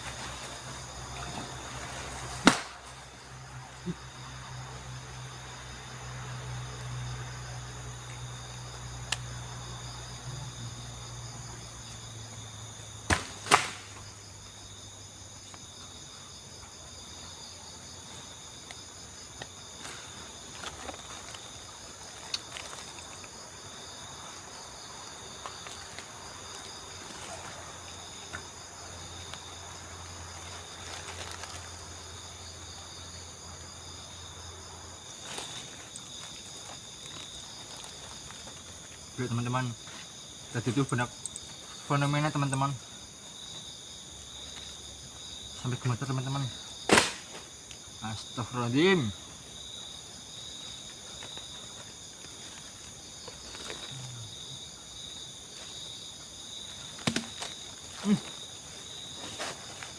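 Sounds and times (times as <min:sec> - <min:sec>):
night insects chirring: 0:00.0 - 0:59.9.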